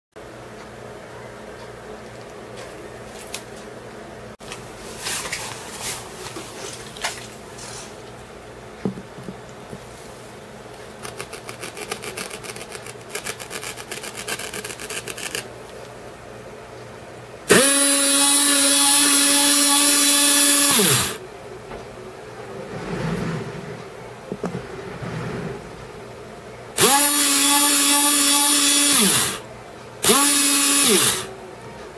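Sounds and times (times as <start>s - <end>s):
power drill motor whining: 17.5s - 21.2s, 26.8s - 29.4s, 30.0s - 31.3s.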